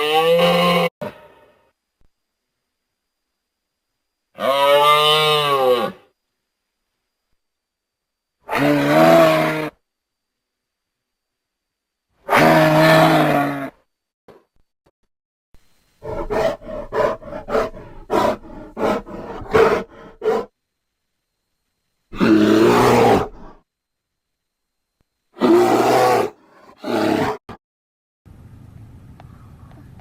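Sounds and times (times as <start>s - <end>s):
animal roaring: 8.5s - 9.8s, 12.3s - 13.8s, 16.0s - 20.5s, 22.1s - 23.6s, 25.4s - 27.5s
animal grunting: 16.0s - 20.5s, 22.1s - 23.6s, 25.4s - 27.4s.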